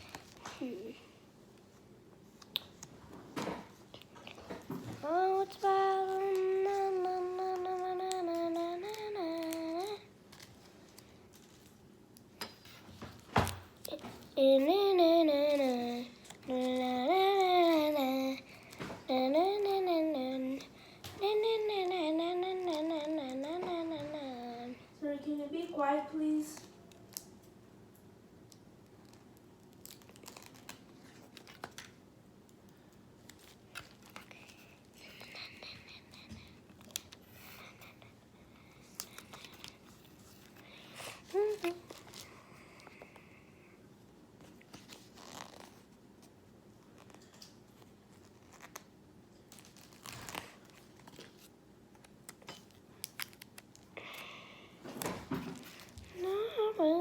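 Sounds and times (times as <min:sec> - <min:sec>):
small objects crinkling: 0:28.4 - 0:32.0, 0:32.9 - 0:35.5, 0:44.4 - 0:54.2.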